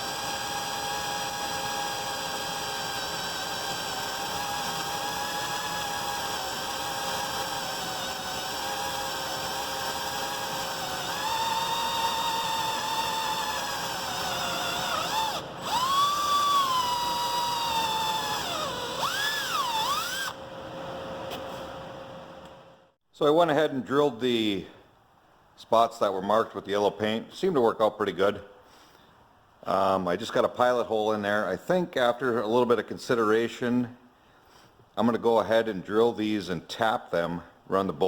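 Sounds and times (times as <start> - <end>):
electric drill drilling metal: 0.0 - 20.4.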